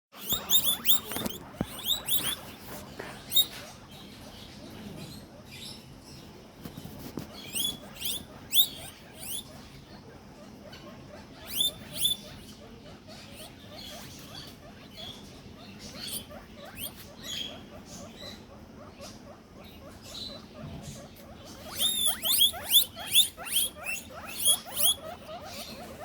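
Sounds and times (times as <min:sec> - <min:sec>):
rustling: 0:00.1 - 0:03.8
guinea pigs wheeking: 0:00.1 - 0:26.0.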